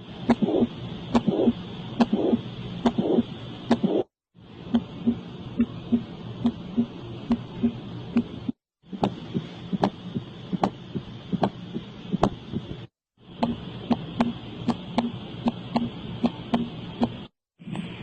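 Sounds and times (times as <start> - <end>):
heart sound clicks: 0.3 - 4.1, 8.2 - 12.8.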